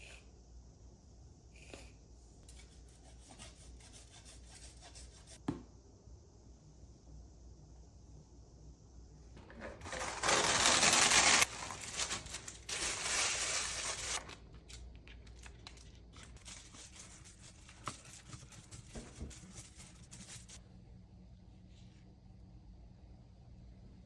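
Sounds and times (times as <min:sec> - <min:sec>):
crinkling and rustling handling noise: 0:09.4 - 0:20.6.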